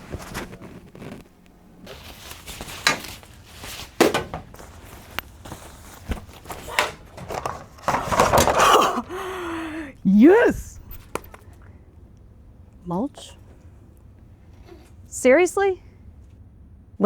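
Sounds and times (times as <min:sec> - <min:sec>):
rustling clatter: 0:00.0 - 0:09.6.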